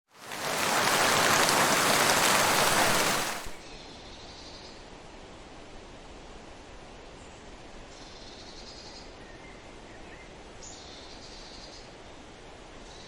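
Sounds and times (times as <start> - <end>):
wind rushing through forest: 0.1 - 3.9.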